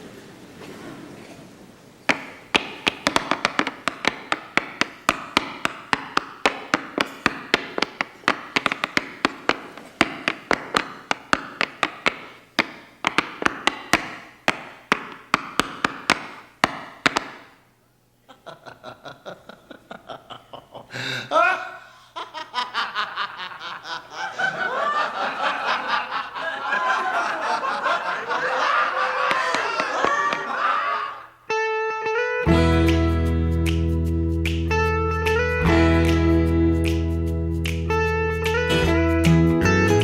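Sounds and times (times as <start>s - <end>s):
tap shoes on wooden stage: 2.1s - 17.6s, 29.2s - 30.6s.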